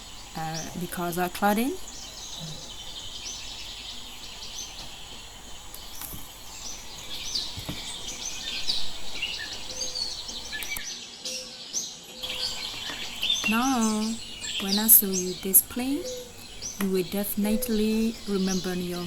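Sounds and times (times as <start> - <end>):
birds chirping: 0.0 - 19.0
steady outdoor hiss: 0.0 - 19.0.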